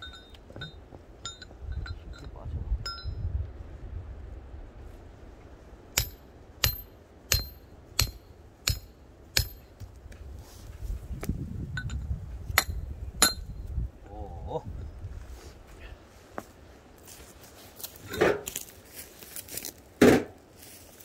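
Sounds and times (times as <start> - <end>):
small metallic clinks: 0.0 - 3.2.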